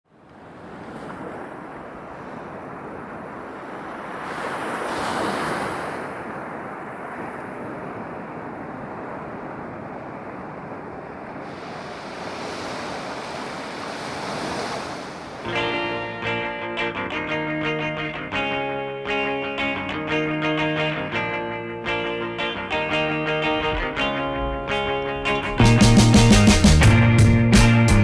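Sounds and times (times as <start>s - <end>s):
ocean surf washing: 0.1s - 16.8s, 20.5s - 27.3s
wind noise on microphone: 22.9s - 27.2s.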